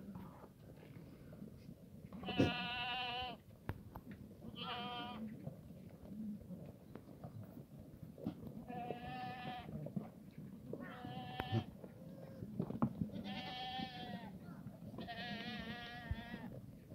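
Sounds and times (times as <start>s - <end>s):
goats bleating: 2.2s - 3.4s, 4.5s - 5.3s, 8.7s - 9.8s, 10.8s - 11.8s, 13.1s - 14.4s, 15.0s - 16.6s.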